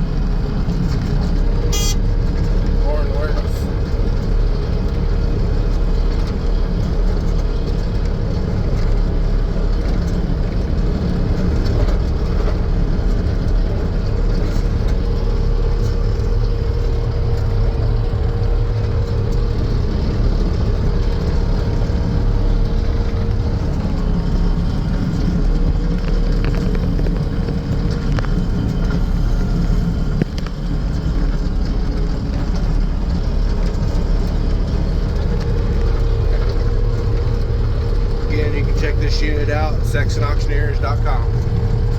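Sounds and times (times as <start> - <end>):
constant tone: 0.0 - 41.9
diesel engine running: 0.0 - 41.9.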